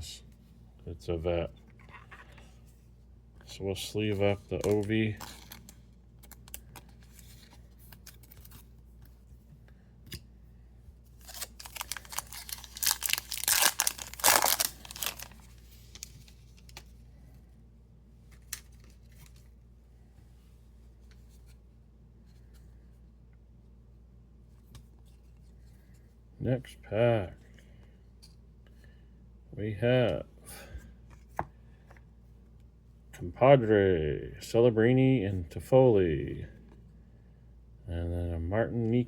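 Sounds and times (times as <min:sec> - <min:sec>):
card pack wrapper tearing: 0:04.6 - 0:08.6, 0:11.2 - 0:16.8.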